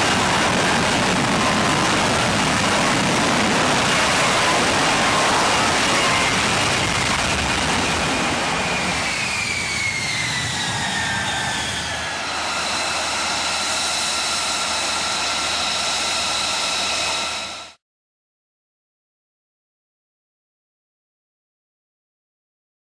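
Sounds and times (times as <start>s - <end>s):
jet engine whining: 0.0s - 17.8s.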